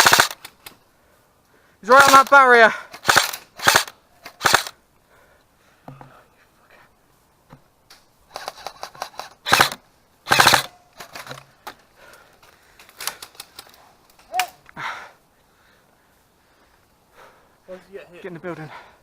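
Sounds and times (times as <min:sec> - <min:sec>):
airsoft guns firing: 0:00.0 - 0:00.6, 0:01.9 - 0:04.8, 0:08.3 - 0:11.4.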